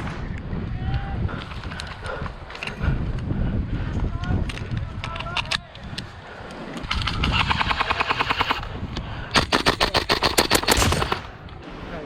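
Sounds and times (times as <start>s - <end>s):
low wind rumble: 0.0s - 12.0s
airsoft rifles firing bursts: 6.9s - 8.7s, 9.4s - 11.4s.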